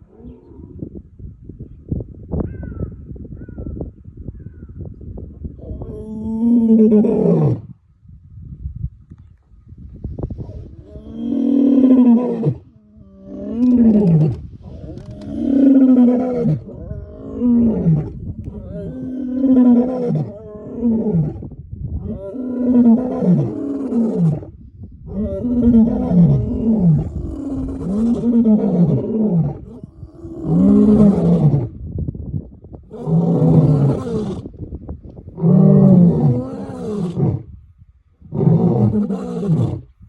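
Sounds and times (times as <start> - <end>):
lion roaring: 10.4 - 21.4, 22.0 - 24.5, 25.1 - 31.8, 32.9 - 34.5, 35.4 - 37.5, 38.3 - 39.9.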